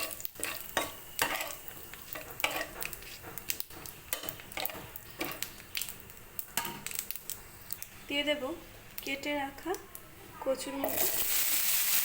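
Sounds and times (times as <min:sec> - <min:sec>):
crackles and pops: 0:00.0 - 0:08.1, 0:08.8 - 0:10.1
spices sizzling in hot oil: 0:00.0 - 0:12.0.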